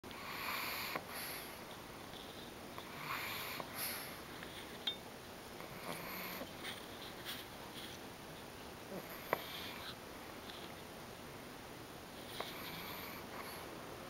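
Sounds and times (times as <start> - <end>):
dog snoring: 0.1 - 1.6, 2.8 - 4.2, 5.6 - 6.8, 8.9 - 10.0, 12.2 - 13.7.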